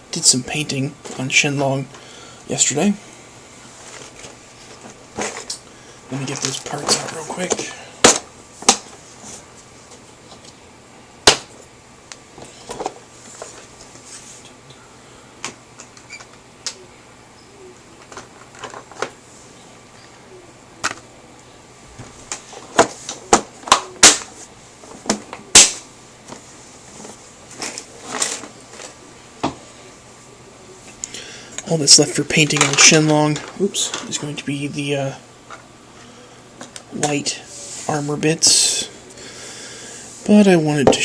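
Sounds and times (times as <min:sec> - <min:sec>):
plastic parts clicking and rattling: 0:18.0 - 0:19.1, 0:32.4 - 0:34.2.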